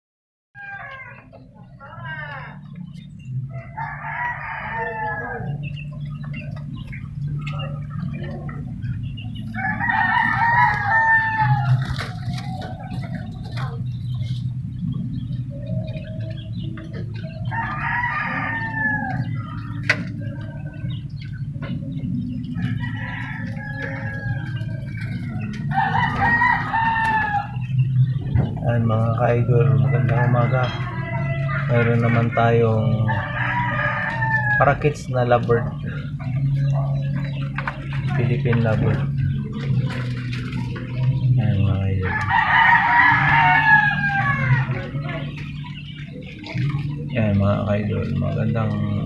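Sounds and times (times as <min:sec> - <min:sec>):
rooster crowing: 0:00.6 - 0:01.3, 0:03.5 - 0:05.8, 0:09.5 - 0:12.9, 0:17.2 - 0:21.0, 0:22.6 - 0:27.8, 0:29.6 - 0:35.0, 0:42.0 - 0:45.2
fowl calls: 0:00.6 - 0:49.0
steady low hum: 0:02.4 - 0:49.0.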